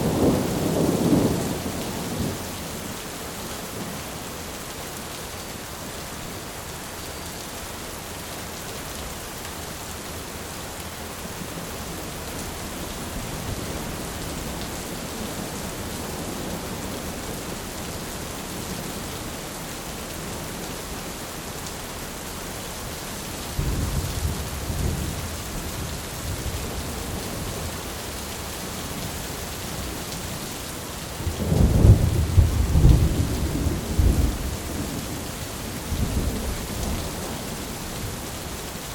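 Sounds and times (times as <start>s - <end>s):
thunder rumbling: 0.0s - 2.5s, 31.2s - 35.2s
heavy rain falling: 0.0s - 38.9s.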